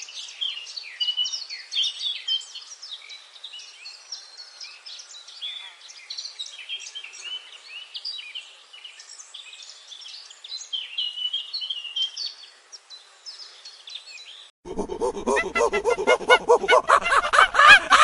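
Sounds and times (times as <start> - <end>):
pulsing pitched animal call: 14.7 - 18.0.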